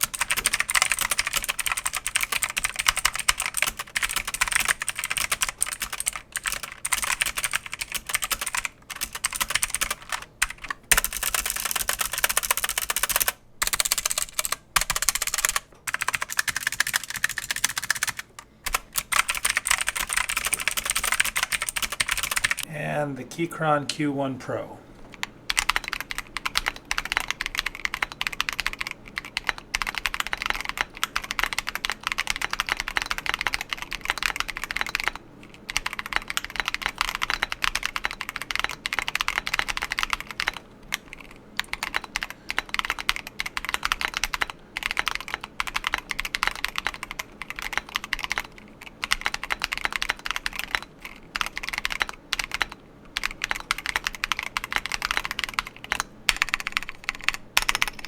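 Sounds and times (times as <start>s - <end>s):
mechanical keyboard typing: 0.0s - 22.7s, 24.5s - 58.0s.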